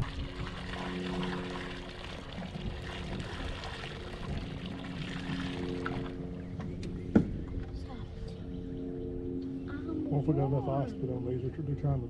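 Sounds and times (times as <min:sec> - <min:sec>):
water pouring and trickling: 0:00.0 - 0:06.4
electric motor hum: 0:00.0 - 0:11.8.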